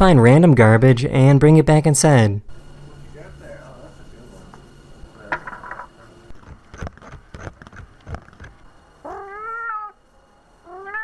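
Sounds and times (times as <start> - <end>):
cat meowing: 9.0 - 10.0, 10.7 - 11.0.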